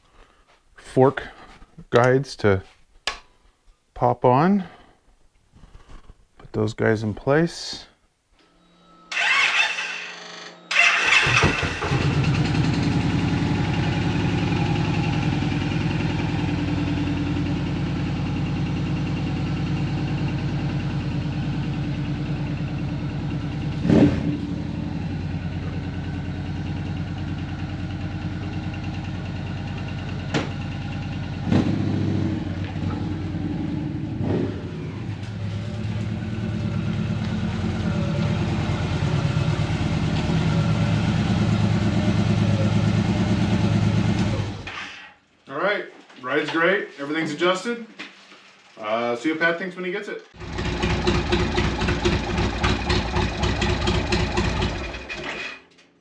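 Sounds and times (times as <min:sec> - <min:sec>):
motorcycle engine running: 0:11.0 - 0:44.7, 0:50.4 - 0:55.2.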